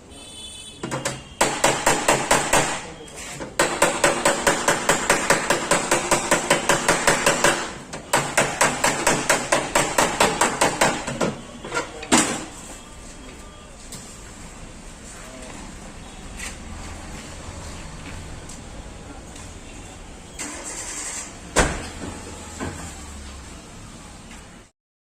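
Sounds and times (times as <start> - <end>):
hammer striking sheet metal: 0.9 - 3.0, 3.6 - 11.2.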